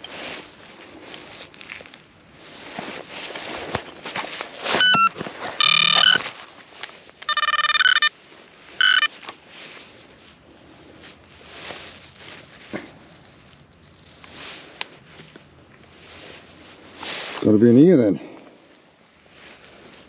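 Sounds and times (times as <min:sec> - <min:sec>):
soil scraping and rustling: 0:00.0 - 0:20.0
metal detector tones: 0:04.7 - 0:06.3, 0:07.2 - 0:09.3.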